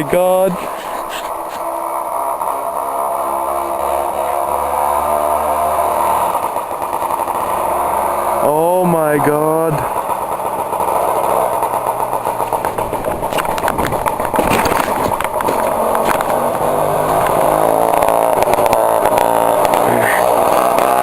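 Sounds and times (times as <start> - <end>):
unmuffled moped engine crackling: 0.2 - 2.6, 8.8 - 21.0.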